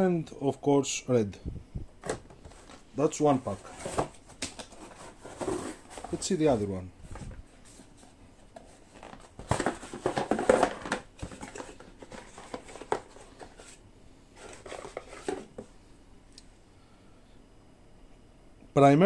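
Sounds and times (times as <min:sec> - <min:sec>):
containers clicking and knocking: 0:09.0 - 0:13.2.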